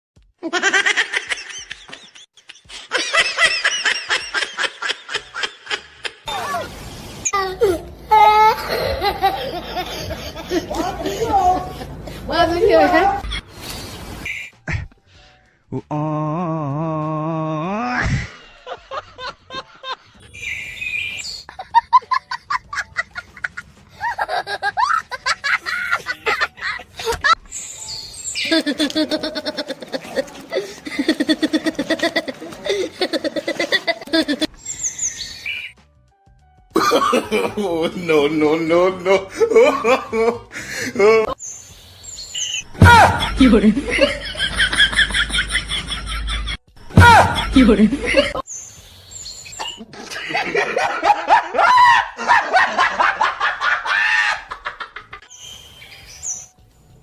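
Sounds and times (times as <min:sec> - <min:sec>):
high-pitched laughter: 0:00.4 - 0:11.9, 0:21.5 - 0:27.4, 0:28.4 - 0:34.5, 0:42.8 - 0:48.4, 0:49.6 - 0:55.3.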